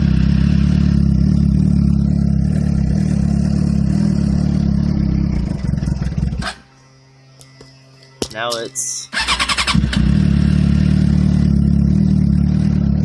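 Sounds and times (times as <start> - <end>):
motorcycle engine idling unevenly: 0.0 - 7.0, 8.8 - 13.0.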